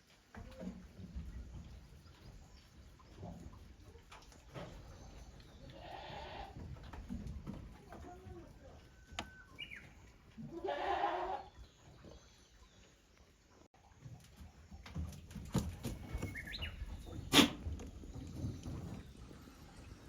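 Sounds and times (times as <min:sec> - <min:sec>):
goats bleating: 0:05.7 - 0:06.6, 0:10.5 - 0:11.5.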